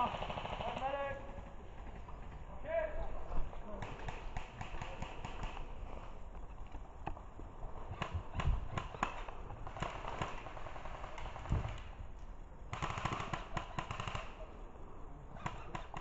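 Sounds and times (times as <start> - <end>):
airsoft guns firing: 0.0 - 2.3, 3.7 - 6.1, 7.8 - 12.0, 12.7 - 14.6, 15.4 - 16.0.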